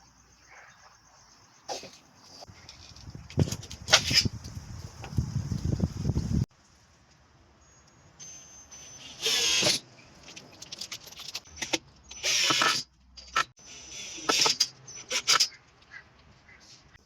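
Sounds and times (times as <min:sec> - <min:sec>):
cordless drill driving screws: 0:09.0 - 0:09.8, 0:11.6 - 0:12.8.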